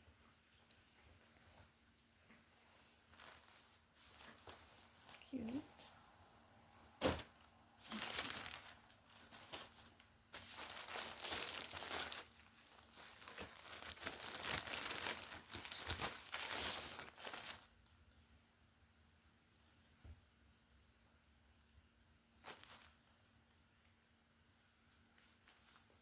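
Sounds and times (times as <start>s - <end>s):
plastic packaging crinkling: 3.0s - 5.3s, 7.0s - 17.7s, 22.4s - 23.0s.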